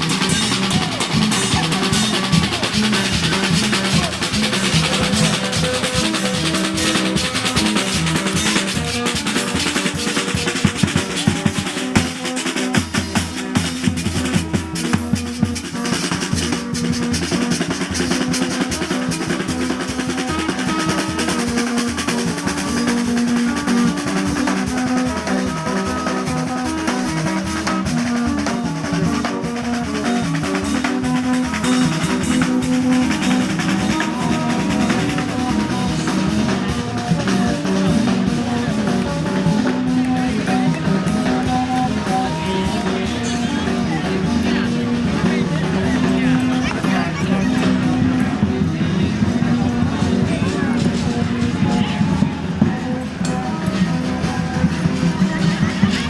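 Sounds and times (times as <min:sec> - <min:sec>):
horns playing held notes: 0:00.0 - 0:13.2
drums and percussion: 0:00.0 - 0:56.0
marching band playing: 0:00.0 - 0:56.0.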